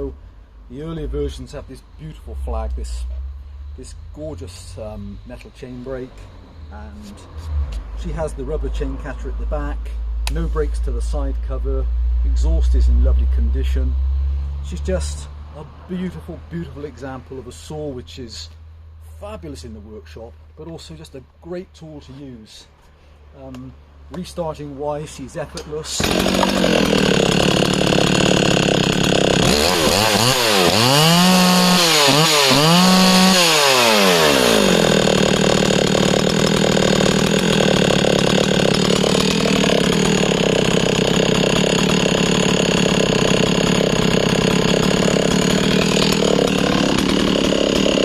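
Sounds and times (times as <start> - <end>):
chainsaw revving and cutting log: 25.5 - 48.0.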